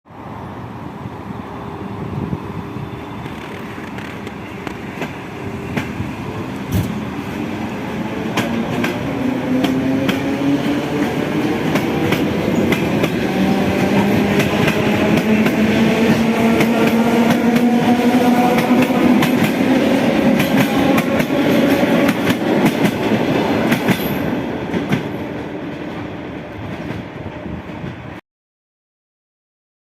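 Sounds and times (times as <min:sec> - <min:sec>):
train wheels clickety-clack: 0:03.2 - 0:06.0, 0:06.7 - 0:07.4, 0:08.2 - 0:28.1.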